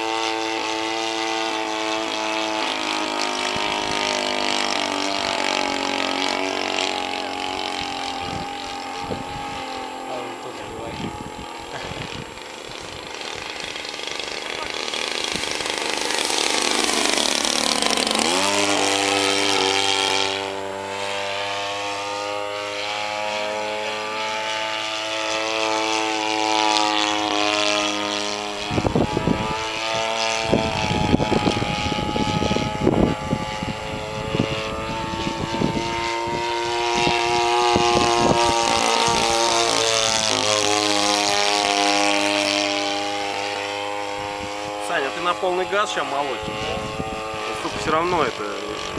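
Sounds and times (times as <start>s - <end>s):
propeller aircraft engine: 0.0s - 48.9s
wind gusts on microphone: 3.4s - 20.5s, 27.9s - 48.9s.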